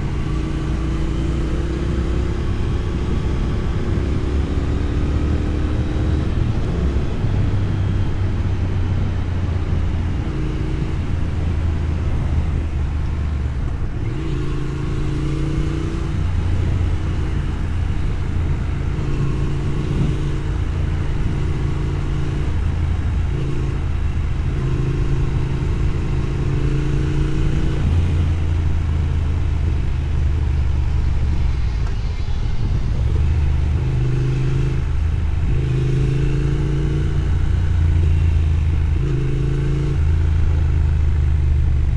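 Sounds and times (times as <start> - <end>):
motorcycle engine running: 0.0 - 41.9
wind noise: 0.0 - 41.9.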